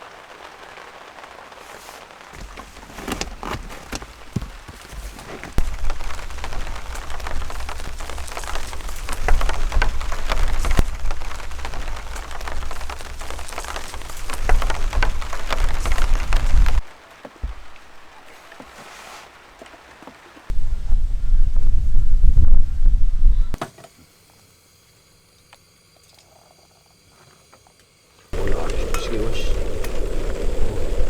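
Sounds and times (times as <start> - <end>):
rain drops hitting: 0.0 - 23.3, 28.3 - 31.0
low rumble: 20.6 - 23.6.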